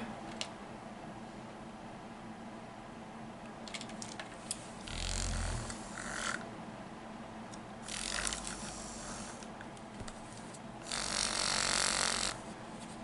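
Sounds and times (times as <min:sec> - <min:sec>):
bed shaker vibrating: 0:04.6 - 0:06.5, 0:07.8 - 0:13.0.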